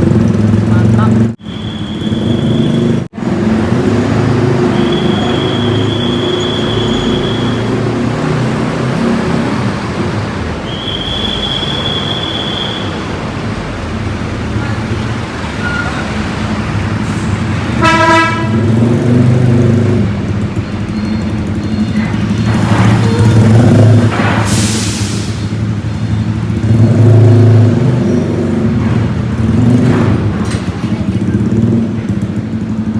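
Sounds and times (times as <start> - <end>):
bus and truck engines droning: 0.0 - 32.9
loud hiss: 24.4 - 25.6.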